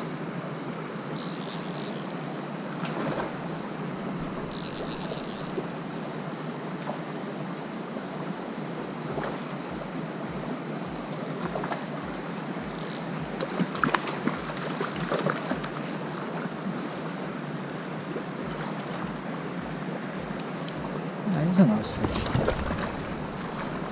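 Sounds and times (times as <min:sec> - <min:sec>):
river water running: 0:00.0 - 0:23.9
sharp water splashes: 0:01.2 - 0:05.7, 0:11.4 - 0:16.9, 0:21.7 - 0:23.9.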